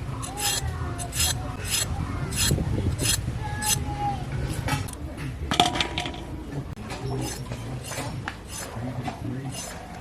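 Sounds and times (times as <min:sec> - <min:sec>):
knife scraping gourd skin: 0:00.2 - 0:03.8, 0:07.0 - 0:10.0.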